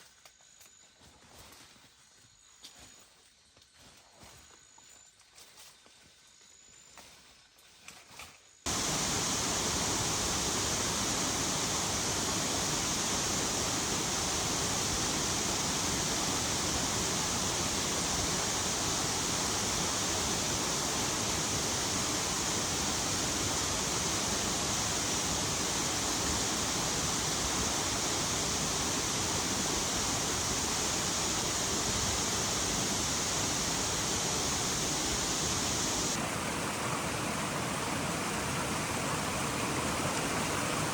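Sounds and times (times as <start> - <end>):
heavy rain falling: 8.7 - 40.9.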